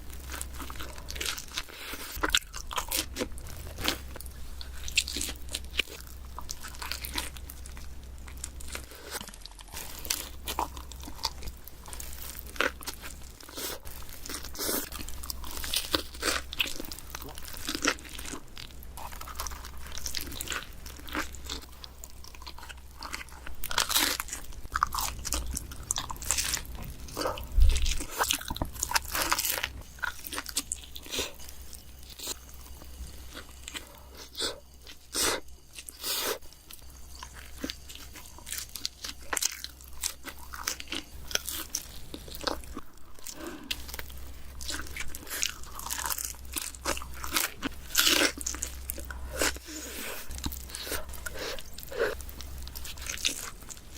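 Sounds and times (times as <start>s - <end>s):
crunchy chewing: 0.0s - 53.9s
steady low hum: 0.0s - 53.9s.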